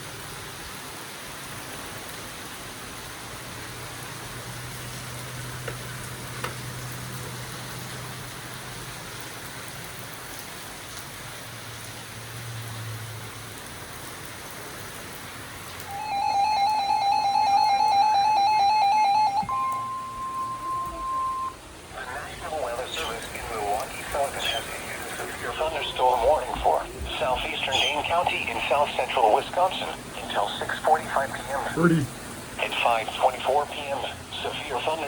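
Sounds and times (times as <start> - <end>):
steady rain: 0.0 - 35.0
weather radio alert beeping: 15.8 - 35.0.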